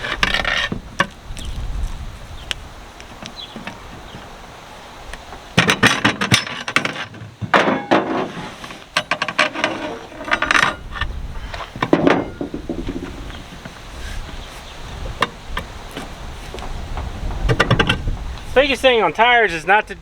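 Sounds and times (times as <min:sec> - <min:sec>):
tire iron scraping wheel rim: 0:00.0 - 0:01.2, 0:05.6 - 0:18.8.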